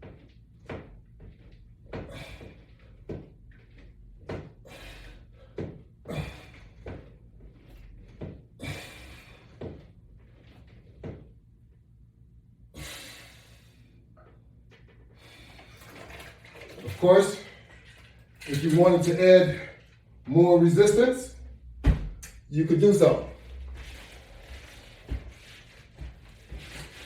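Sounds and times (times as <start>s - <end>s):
exercise rig knocks and clunks: 0.0s - 11.4s, 21.6s - 22.5s.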